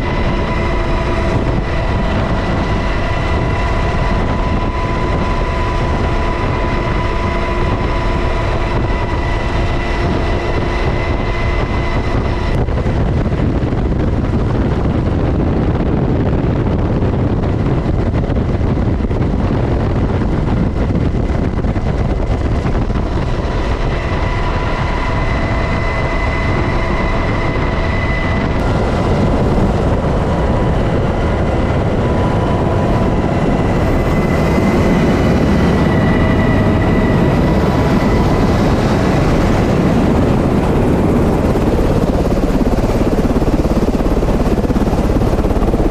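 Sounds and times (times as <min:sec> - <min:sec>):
helicopter rotor and engine: 0:00.0 - 0:45.9
high whine: 0:20.1 - 0:45.9.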